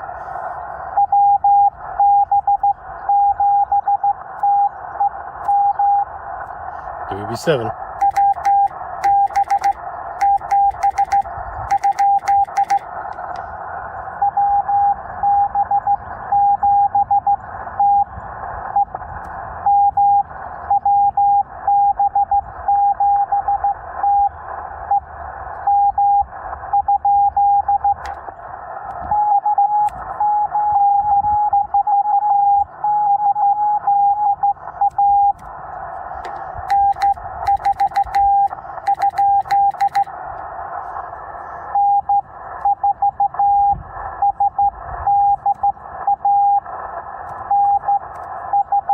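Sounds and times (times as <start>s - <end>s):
radio band hiss: 0.0s - 1.0s, 2.7s - 14.3s, 17.4s - 20.8s, 27.8s - 29.1s, 34.5s - 48.9s
morse code tone: 7.3s - 12.9s, 29.1s - 35.4s, 36.7s - 40.1s.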